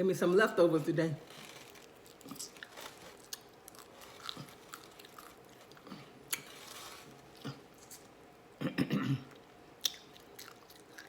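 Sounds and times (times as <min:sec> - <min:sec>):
wet chewing sounds: 0:01.3 - 0:08.1, 0:09.3 - 0:11.0.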